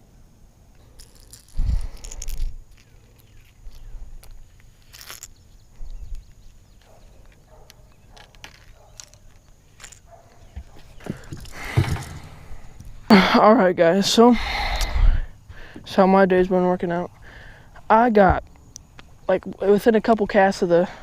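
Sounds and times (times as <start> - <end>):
rustling: 0.8 - 13.1
deep bumps: 10.5 - 13.2.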